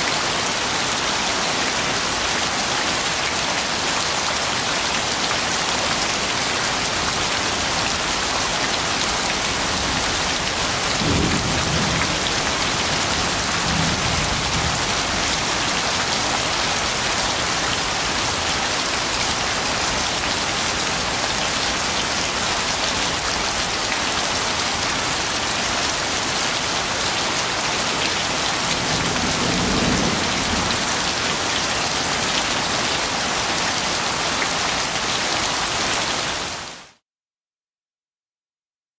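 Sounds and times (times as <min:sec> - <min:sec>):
low thunder rumbles: 0:09.6 - 0:15.7, 0:28.8 - 0:31.4.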